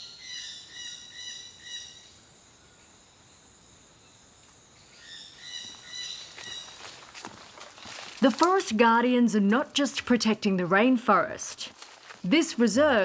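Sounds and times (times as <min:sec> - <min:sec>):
insects high-pitched drone: 0:00.0 - 0:08.1.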